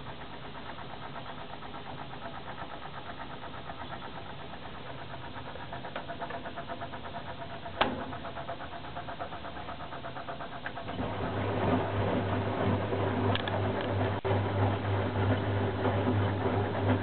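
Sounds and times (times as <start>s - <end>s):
washing machine pulsing hum: 0.0s - 17.0s
washing machine click: 7.8s - 8.1s.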